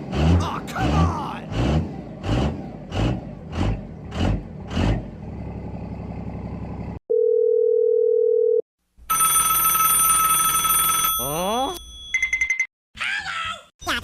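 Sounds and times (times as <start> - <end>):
vehicle engine revving: 0.0 - 7.0
electronic dial tone: 7.1 - 11.4.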